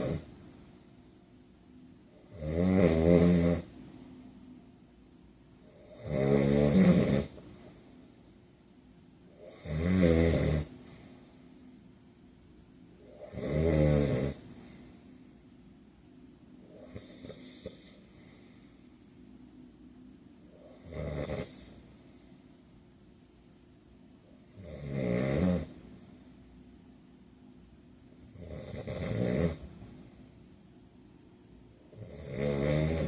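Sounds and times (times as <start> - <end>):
man snoring: 0.0 - 0.3, 2.2 - 3.7, 5.7 - 7.4, 9.4 - 10.8, 13.0 - 14.5, 16.7 - 18.1, 20.5 - 21.8, 24.4 - 25.8, 28.2 - 29.7, 31.9 - 33.0.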